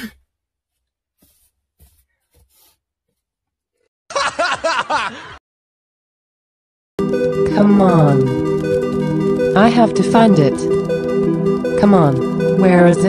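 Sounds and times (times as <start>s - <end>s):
person laughing: 4.1s - 5.4s.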